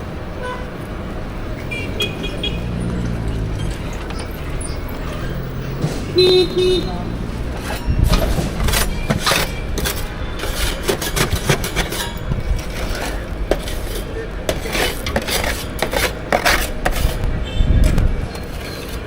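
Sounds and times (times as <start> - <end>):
utensils and dishes clattering: 7.1 - 19.0.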